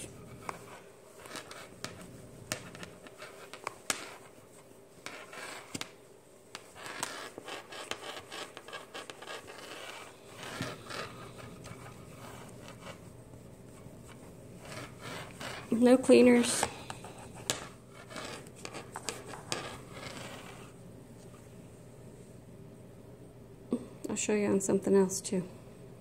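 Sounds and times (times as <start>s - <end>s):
cloth wiping glass screen: 6.6s - 16.6s.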